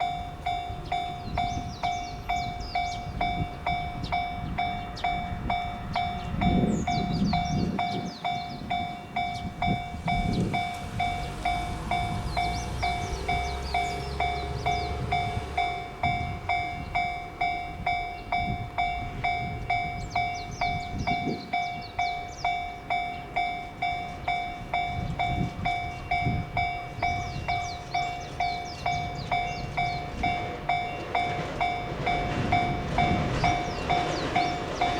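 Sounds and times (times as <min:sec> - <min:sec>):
level crossing warning bell ringing: 0:00.0 - 0:34.9
low rumbles: 0:08.8 - 0:21.2.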